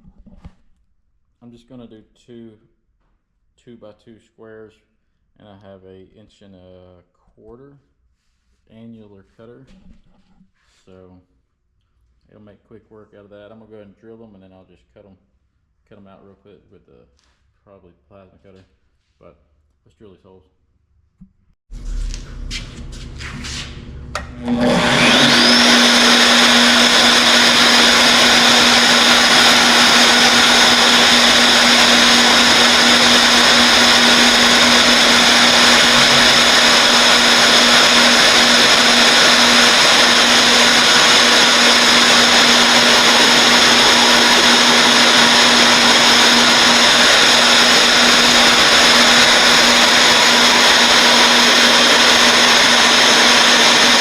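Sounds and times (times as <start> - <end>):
electric drill drilling metal: 24.2 - 54.0.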